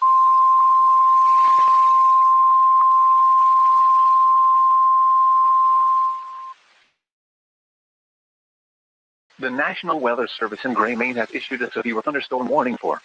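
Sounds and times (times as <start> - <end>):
loud alarm tone: 0.0 - 6.5
faint radio hiss: 9.3 - 13.0.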